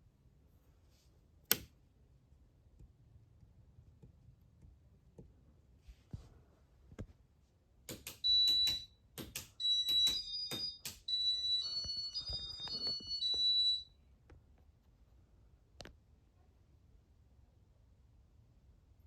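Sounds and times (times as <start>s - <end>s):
sharp clicks: 7.9s - 11.1s
high electronic beeps: 9.6s - 13.9s.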